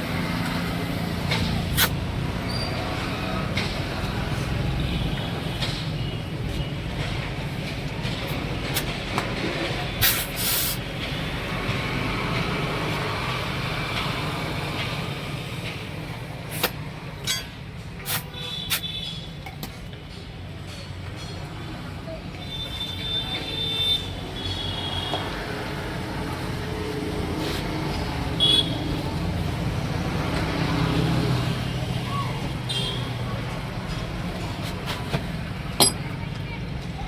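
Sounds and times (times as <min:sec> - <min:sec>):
short hiss: 0:10.0 - 0:10.8.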